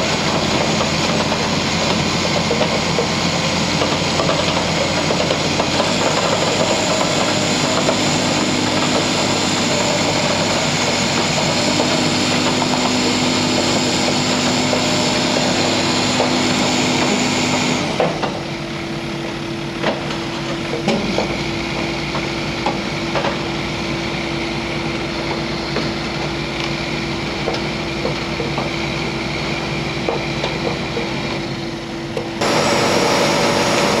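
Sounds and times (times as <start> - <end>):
machine scraping and clanking: 0.0 - 18.4, 32.4 - 34.0
heavy diesel engine running: 0.0 - 34.0.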